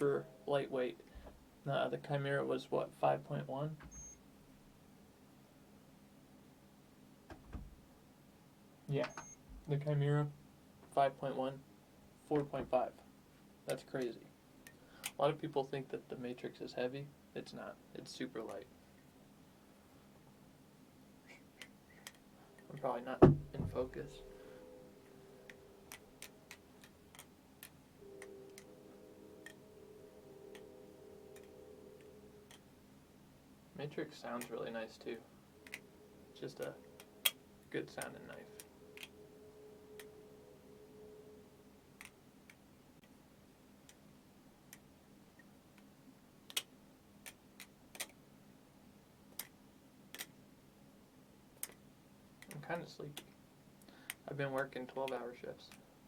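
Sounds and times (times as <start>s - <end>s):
faint steady hum: 0.0s - 56.0s
butterfly knife handles clicking: 47.3s - 48.2s.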